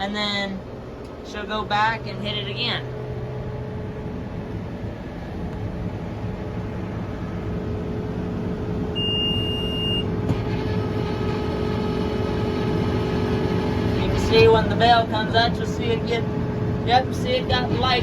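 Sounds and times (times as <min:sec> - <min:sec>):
tractor engine running under load: 0:00.0 - 0:18.0
electronic beep: 0:09.0 - 0:10.1.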